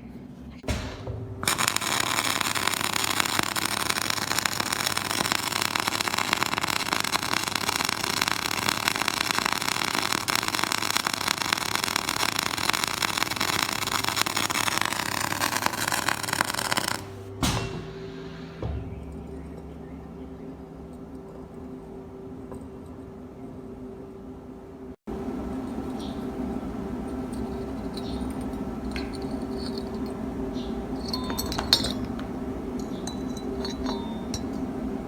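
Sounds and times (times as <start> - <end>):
low hum: 0.5 - 35.0
welding arc crackling: 0.7 - 17.4.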